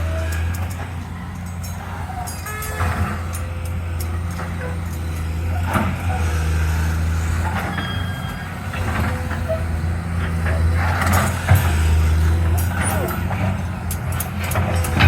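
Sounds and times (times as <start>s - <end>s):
digging clanks and knocks: 0.0s - 15.0s
excavator diesel engine drone: 0.0s - 15.0s.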